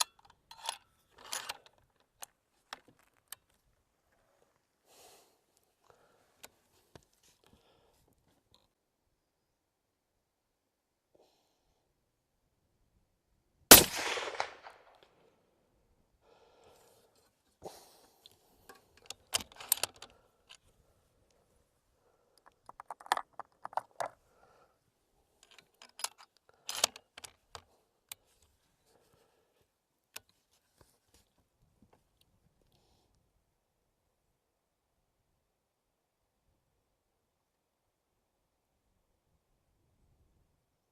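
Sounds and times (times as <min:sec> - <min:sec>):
rifle handling clicks and knocks: 0:00.0 - 0:03.8, 0:13.8 - 0:15.1, 0:18.1 - 0:20.7, 0:22.4 - 0:24.2, 0:25.4 - 0:28.6
rifle shot with ringing tail: 0:13.7 - 0:14.9.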